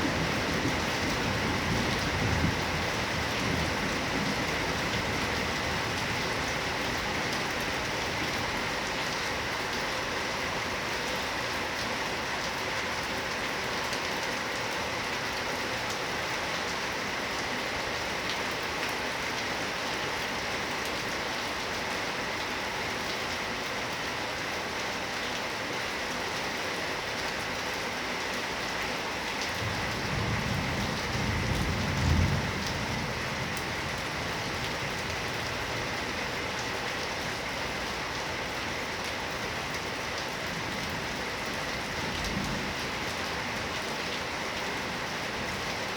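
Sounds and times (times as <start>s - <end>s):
low rumble of thunder: 0.0s - 7.2s, 29.6s - 36.0s, 40.6s - 43.7s
heavy rain falling: 0.0s - 45.9s.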